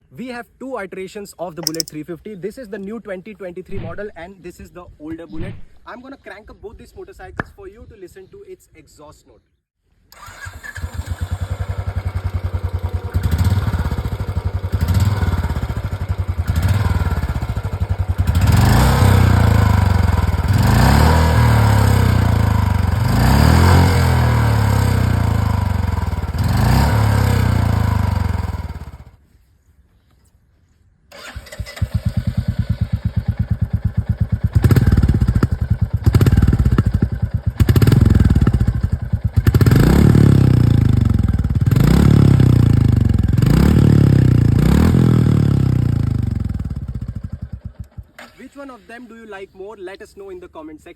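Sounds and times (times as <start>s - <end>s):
motorcycle idling and revving: 10.1s - 29.2s, 31.1s - 48.5s.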